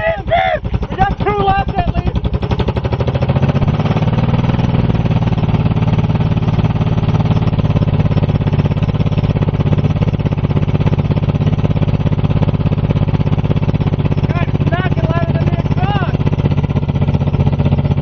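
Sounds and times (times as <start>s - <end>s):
car engine at high revs: 0.0s - 18.0s.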